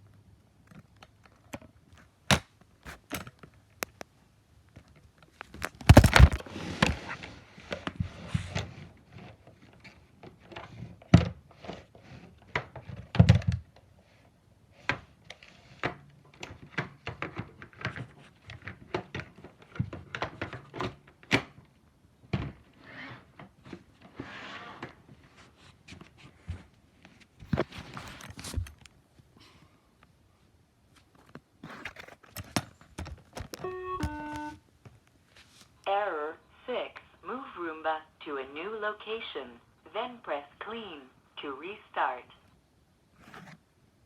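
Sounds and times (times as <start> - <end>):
robot vacuum knocking and bumping: 5.8 - 6.4.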